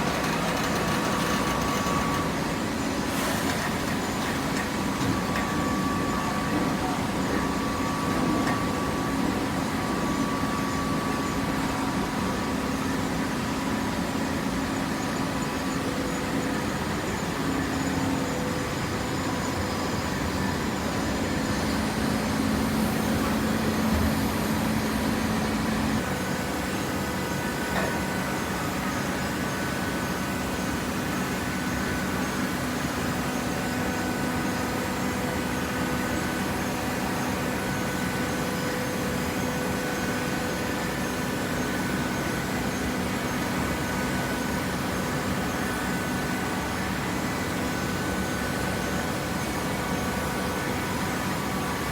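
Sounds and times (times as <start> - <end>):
hydraulic motor and pump tones: 0.0 - 11.1, 20.0 - 30.3
baler machine hum: 0.0 - 11.2, 20.2 - 30.8.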